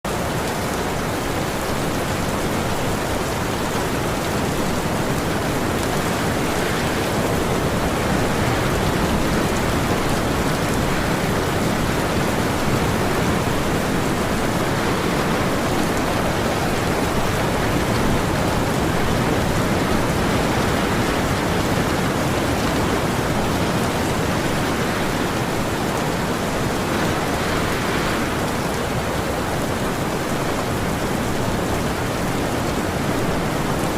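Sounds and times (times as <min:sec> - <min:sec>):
heavy rain: 0:00.0 - 0:33.9
wind: 0:00.0 - 0:33.9
sea waves washing: 0:00.1 - 0:33.9.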